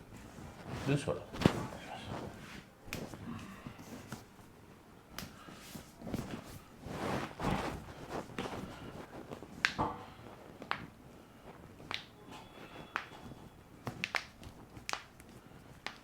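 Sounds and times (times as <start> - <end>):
soft rustling: 0.0 - 16.0.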